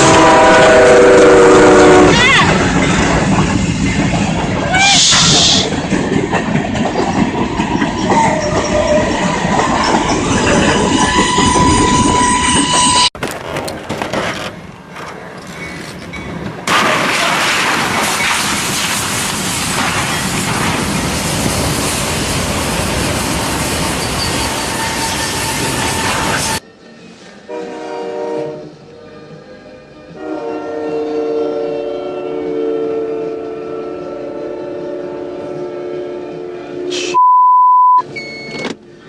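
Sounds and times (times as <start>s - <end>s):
train clattering on rails: 0.0s - 26.6s.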